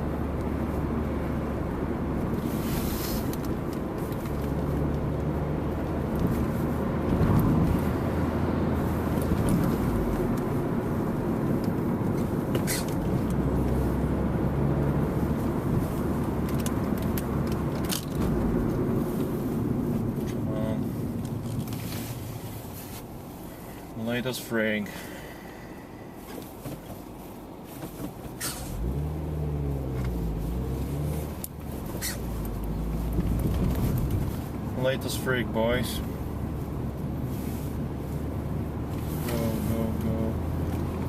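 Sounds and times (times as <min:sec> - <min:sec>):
car engine running: 0:00.0 - 0:41.0
road noise: 0:00.0 - 0:41.0.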